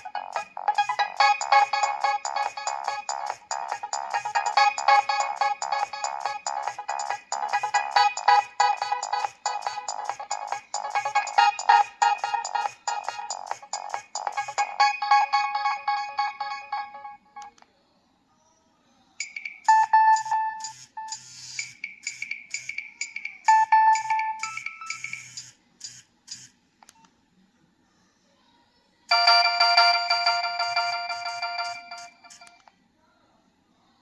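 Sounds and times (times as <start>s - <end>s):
mobile phone ringtones: 0.0s - 17.5s, 19.2s - 21.6s, 23.5s - 25.5s, 29.1s - 32.6s.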